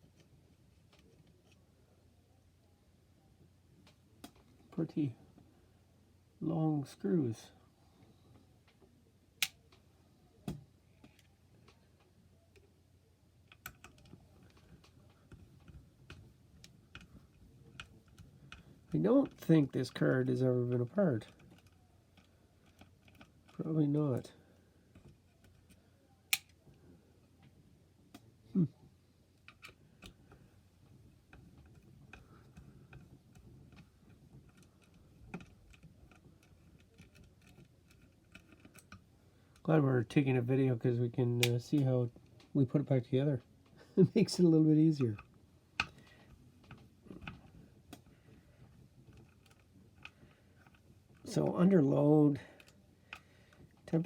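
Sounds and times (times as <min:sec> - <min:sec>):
small metal parts clicking: 0:34.4 - 0:39.0.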